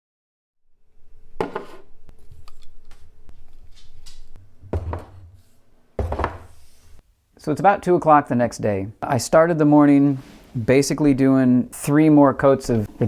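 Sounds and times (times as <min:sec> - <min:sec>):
dull knocks and thuds: 0:04.7 - 0:05.2, 0:06.0 - 0:06.5.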